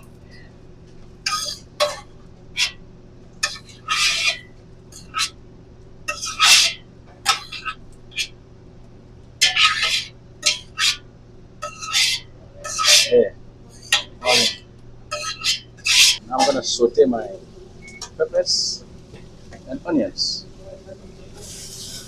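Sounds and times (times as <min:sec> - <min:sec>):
steady low hum: 0:00.0 - 0:22.0
utensil scraping a pan: 0:01.3 - 0:02.8, 0:03.4 - 0:05.4, 0:06.1 - 0:08.3, 0:09.4 - 0:11.0, 0:11.6 - 0:16.7, 0:21.3 - 0:22.0.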